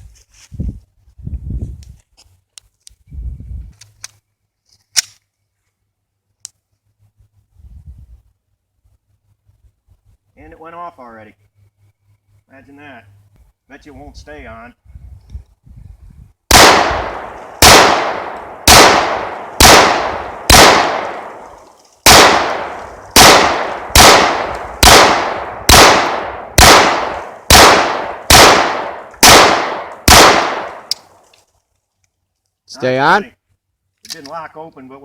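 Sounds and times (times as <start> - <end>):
pistol shots: 16.5 - 31.0
small click: 34.0 - 34.4.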